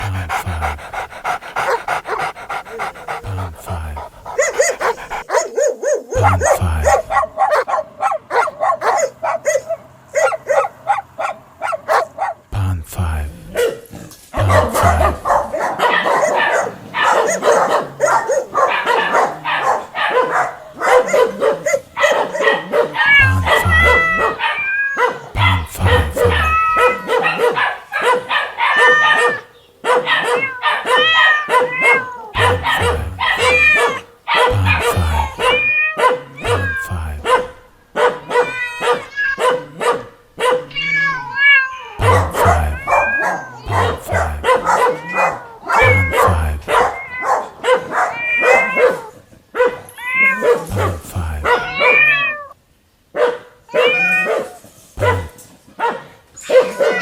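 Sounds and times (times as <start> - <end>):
cats meowing: 0.0 - 5.3, 15.2 - 37.3, 38.2 - 39.5, 40.6 - 47.4, 48.1 - 49.1, 49.9 - 52.6, 53.7 - 54.4, 56.4 - 57.0
dog barking and yipping: 0.0 - 12.4, 14.5 - 40.7, 42.0 - 52.0, 53.2 - 57.0.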